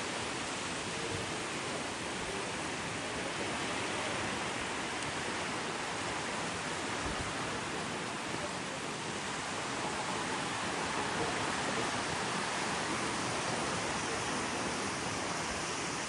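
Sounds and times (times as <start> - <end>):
waves breaking on beach: 0.0 - 16.0.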